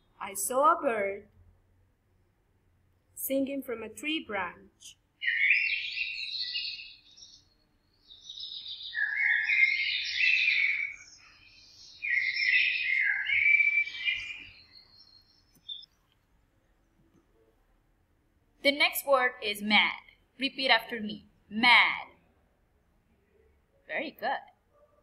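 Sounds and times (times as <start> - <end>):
songbird warbling: 5.2 - 15.9.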